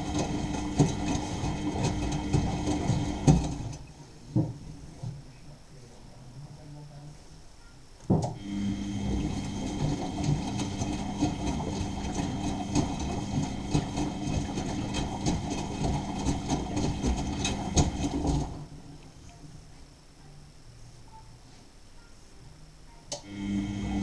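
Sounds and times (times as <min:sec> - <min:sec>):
washing machine motor hum: 0:00.0 - 0:04.5, 0:08.2 - 0:19.4, 0:23.1 - 0:24.0
washing machine thump: 0:01.8 - 0:03.8, 0:08.1 - 0:08.4.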